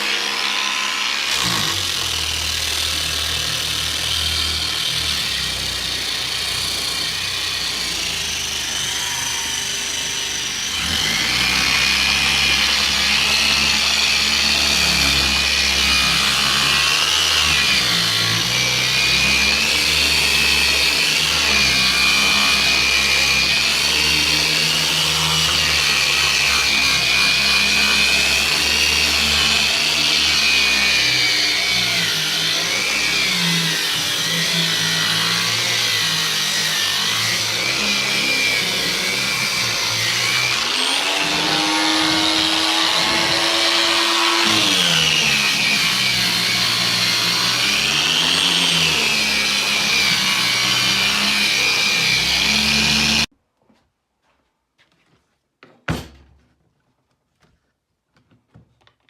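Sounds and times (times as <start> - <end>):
sanding machine motor running: 0.0 - 53.3
knock: 55.6 - 56.4.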